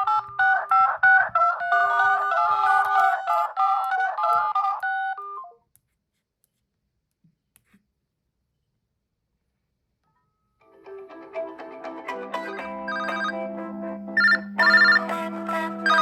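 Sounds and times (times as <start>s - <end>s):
phone ringtone melody: 10.7s - 16.0s.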